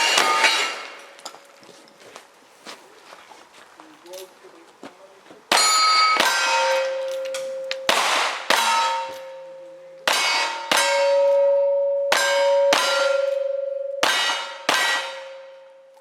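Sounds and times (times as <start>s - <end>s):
gunfire hitting steel targets: 0.0s - 1.4s, 5.5s - 15.7s
steel plate ringing: 0.0s - 1.4s, 5.5s - 16.0s.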